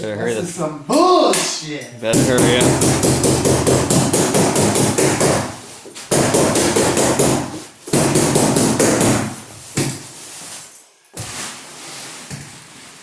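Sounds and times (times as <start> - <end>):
stapler firing rapidly: 2.2 - 5.5.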